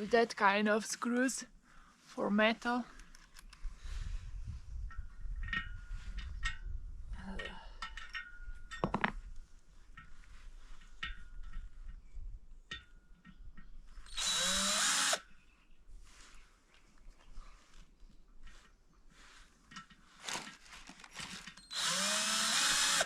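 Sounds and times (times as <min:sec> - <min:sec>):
screws and tools clicking: 0:14.0 - 0:15.3, 0:21.2 - 0:23.0
drill driver driving screw: 0:14.1 - 0:15.2, 0:21.6 - 0:23.0.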